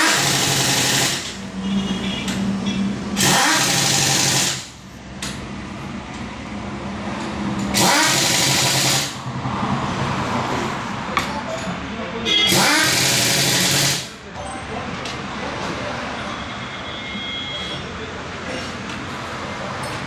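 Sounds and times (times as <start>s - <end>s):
impact wrench firing: 0.0s - 1.4s, 3.2s - 4.8s, 7.6s - 9.2s, 12.5s - 14.1s.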